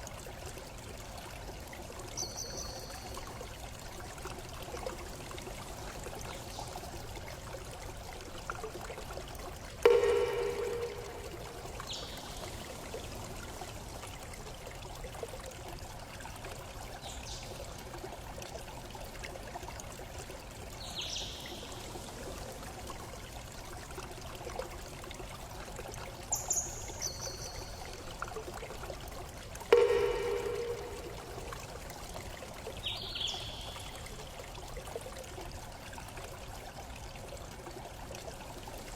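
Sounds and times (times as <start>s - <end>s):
quick high notes stepping down: 9.9s - 12.2s, 29.7s - 31.8s
high falling chirps: 29.7s - 31.7s.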